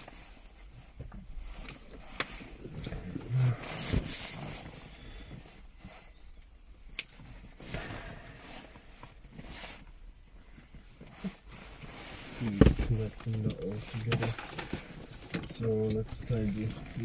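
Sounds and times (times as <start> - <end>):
rustling and scraping of plastic trim: 8.7 - 17.0.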